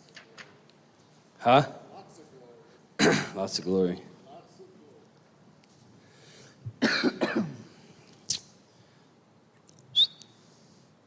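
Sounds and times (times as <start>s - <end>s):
person coughing: 3.0s - 3.4s, 6.7s - 7.8s.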